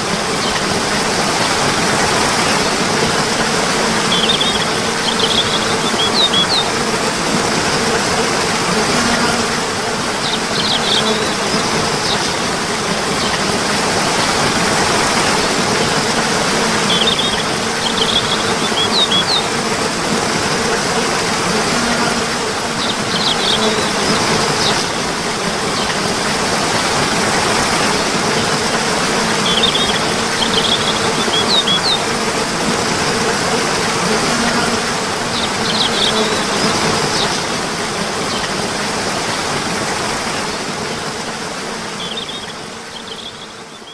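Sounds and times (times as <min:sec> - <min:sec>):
rushing water: 0:00.0 - 0:43.9
high bird chirps: 0:04.1 - 0:06.7.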